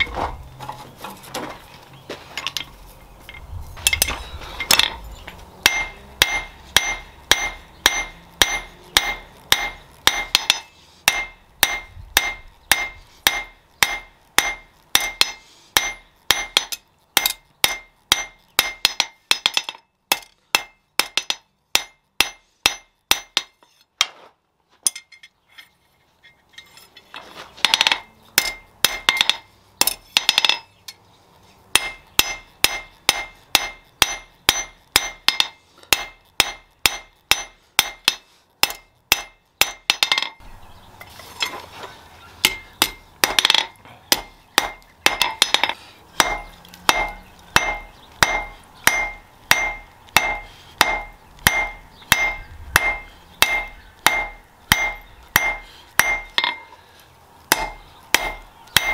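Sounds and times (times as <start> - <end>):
hammer ringing on anvil: 5.7 - 23.5, 42.5 - 56.7, 57.5 - 58.9.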